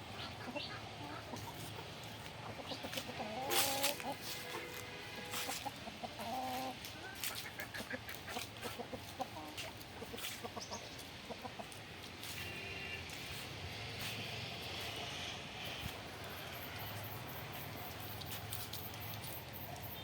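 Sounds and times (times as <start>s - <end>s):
chickens clucking: 0.0s - 19.9s
steady background noise: 0.0s - 20.0s
chicken calls: 0.1s - 13.4s.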